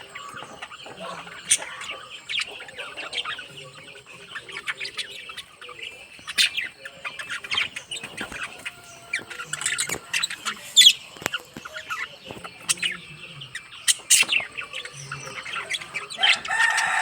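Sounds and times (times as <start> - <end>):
parrots chirping and chattering: 0.0 - 17.0
loud bird squeak: 11.7 - 17.0.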